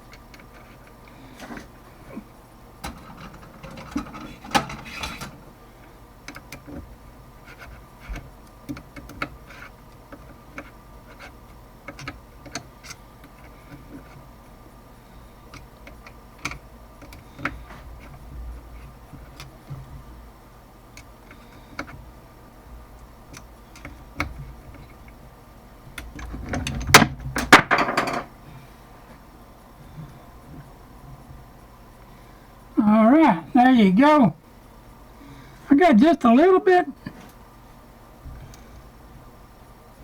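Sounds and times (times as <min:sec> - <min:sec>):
faint steady hum: 0:00.0 - 0:40.0
hand tools clicking and knocking: 0:02.8 - 0:05.4.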